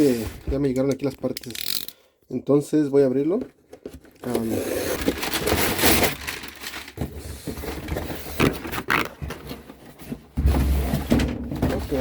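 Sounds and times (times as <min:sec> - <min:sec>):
package tearing and crinkling: 0:04.3 - 0:07.0, 0:08.2 - 0:09.3.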